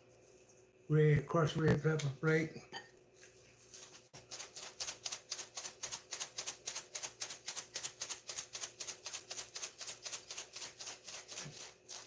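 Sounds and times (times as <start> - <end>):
spice shaker rattling: 3.8 - 12.0.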